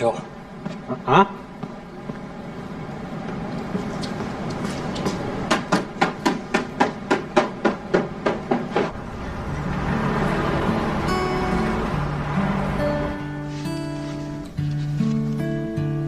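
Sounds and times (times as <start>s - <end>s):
rapid sharp knocks: 5.5s - 8.9s.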